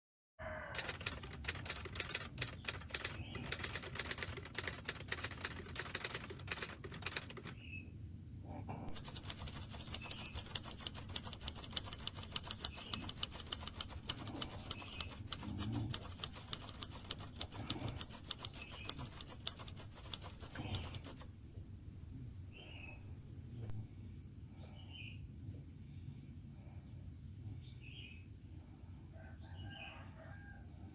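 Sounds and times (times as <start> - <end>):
fast clicking and scratching: 0.7 - 7.6, 8.9 - 21.3.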